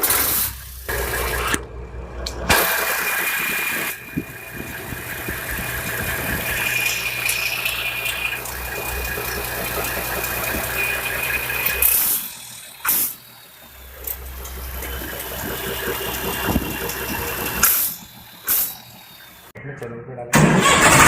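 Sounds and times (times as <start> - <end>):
high whine: 0.8 - 19.8
small motor humming: 3.4 - 19.5.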